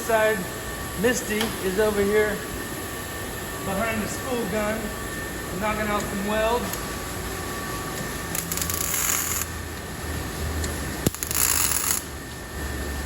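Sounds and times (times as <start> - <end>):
welder arc crackling: 3.6 - 12.8.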